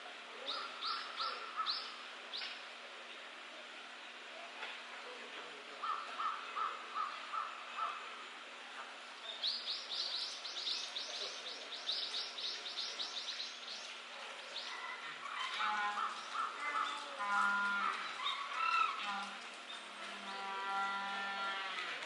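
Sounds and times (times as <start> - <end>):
small birds singing: 0.4 - 2.6, 9.1 - 20.5.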